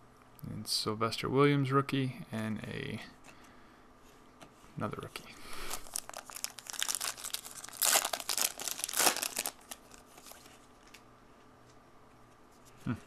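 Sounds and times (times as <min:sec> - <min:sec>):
foil wrapper crinkling: 0:05.6 - 0:11.0.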